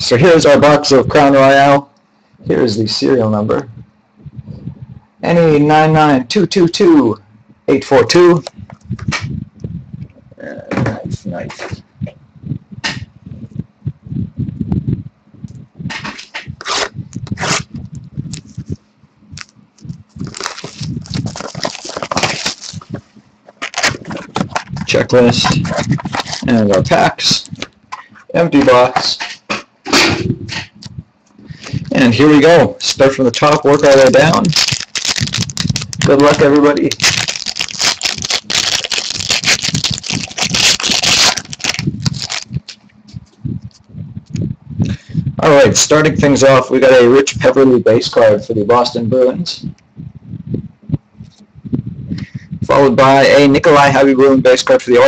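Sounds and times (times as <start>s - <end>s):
plastic wrapping crinkling: 18.2s - 27.8s, 33.2s - 42.8s.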